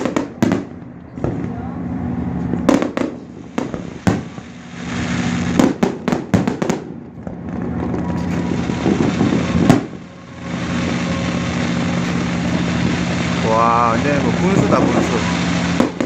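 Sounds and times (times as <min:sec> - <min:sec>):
fireworks bangs and cracks: 0:00.0 - 0:16.0
steady low drone: 0:06.8 - 0:16.0.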